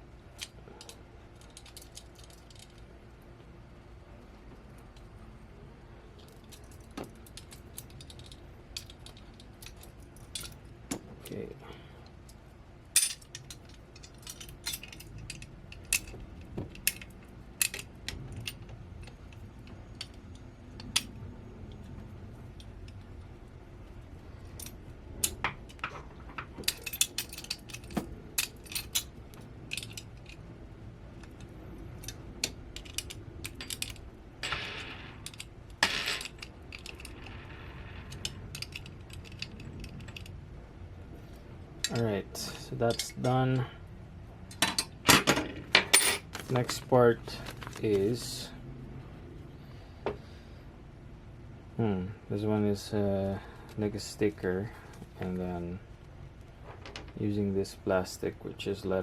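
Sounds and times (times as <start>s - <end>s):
small metal parts clinking: 0.3s - 2.9s, 6.2s - 40.5s, 41.3s - 43.8s, 44.5s - 48.6s.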